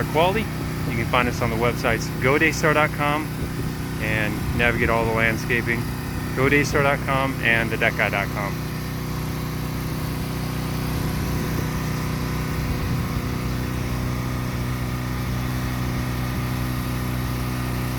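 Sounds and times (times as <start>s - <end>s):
pressure washer engine running: 0.0s - 17.9s.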